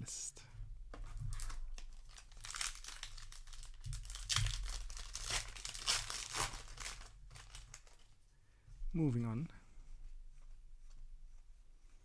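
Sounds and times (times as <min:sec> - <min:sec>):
foil wrapper crinkling and tearing: 0:01.3 - 0:08.0.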